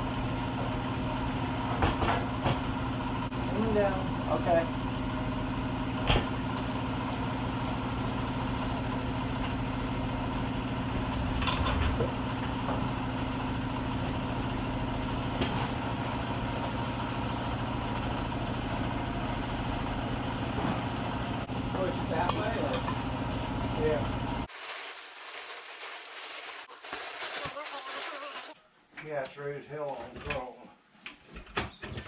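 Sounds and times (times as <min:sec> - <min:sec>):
engine idling: 0:00.0 - 0:24.5.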